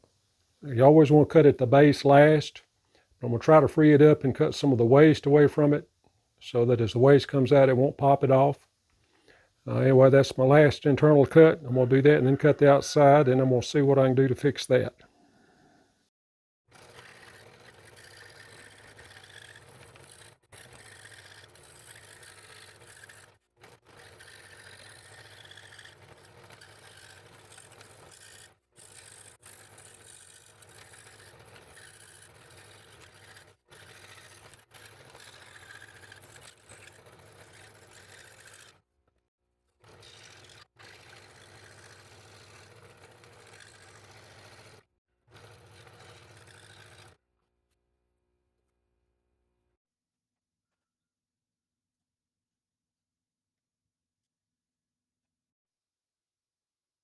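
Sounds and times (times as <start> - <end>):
scroll saw buzzing: 16.7 - 38.9, 39.7 - 47.2.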